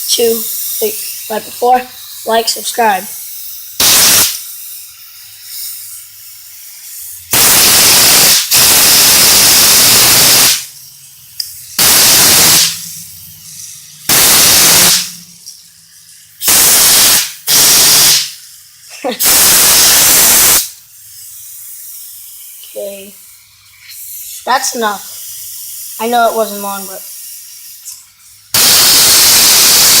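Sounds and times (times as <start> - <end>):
compressed air blasts hissing: 0.0 - 30.0.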